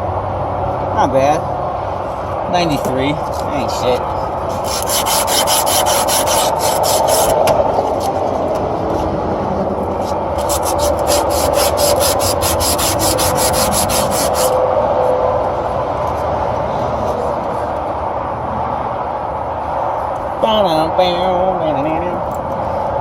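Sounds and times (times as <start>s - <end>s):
rubbing strokes on copper tubing: 4.5s - 7.4s, 10.0s - 14.6s.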